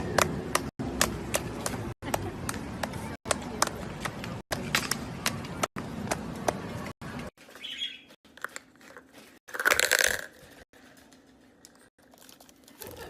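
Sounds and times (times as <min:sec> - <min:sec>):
parrot high chirp: 0:07.6 - 0:08.1.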